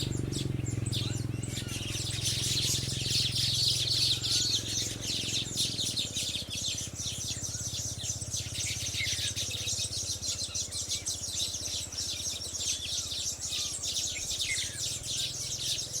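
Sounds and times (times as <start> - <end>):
weaver birds twittering: 0.0 - 16.0.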